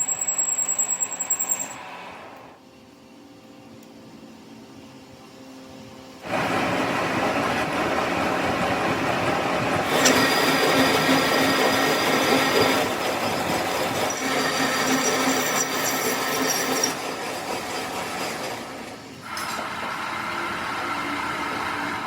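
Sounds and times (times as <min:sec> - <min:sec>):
high metallic squealing: 0:00.0 - 0:01.8, 0:09.9 - 0:17.2
metal grinding rush: 0:09.8 - 0:18.1.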